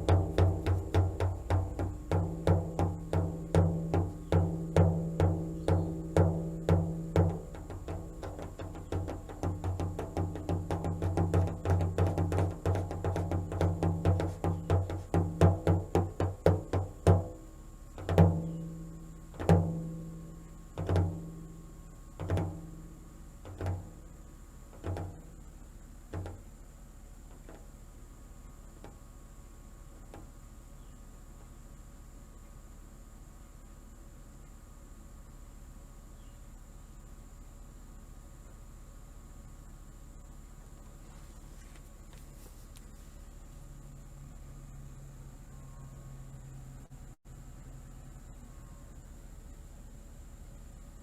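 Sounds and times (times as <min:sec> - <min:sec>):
steady drum beat: 0:00.0 - 0:25.4.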